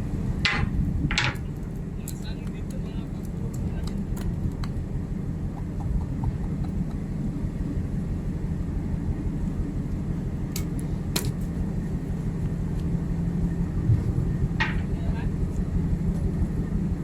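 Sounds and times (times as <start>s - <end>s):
ship machinery rumble: 0.0s - 17.0s.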